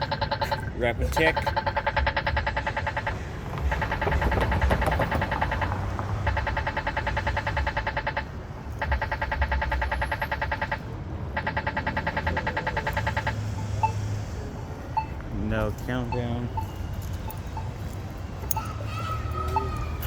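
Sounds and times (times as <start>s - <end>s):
pedestrian signal rapid ticking: 0.0s - 20.0s.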